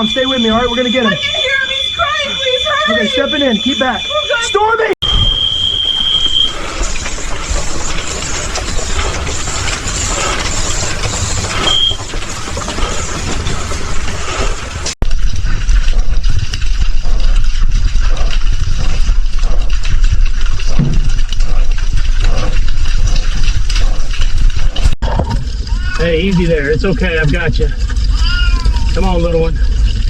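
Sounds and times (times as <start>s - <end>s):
high alarm beep: 0.0s - 6.7s, 11.5s - 12.0s
deep rumble: 5.0s - 30.0s.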